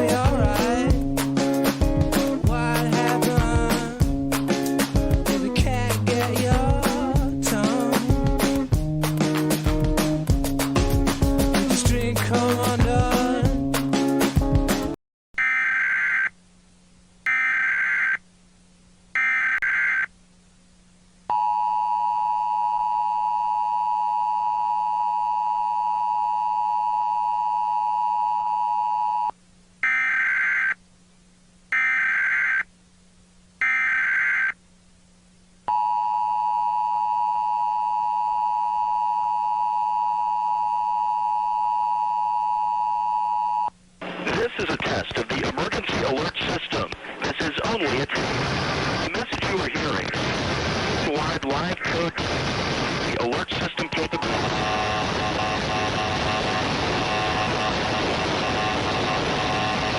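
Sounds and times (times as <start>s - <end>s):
music: 0.0s - 15.0s.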